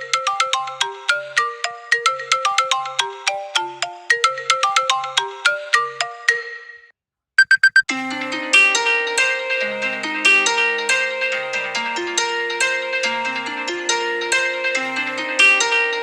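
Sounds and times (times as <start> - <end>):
bright ringtone melody: 6.6 - 7.8
quick short beeps: 7.4 - 7.9.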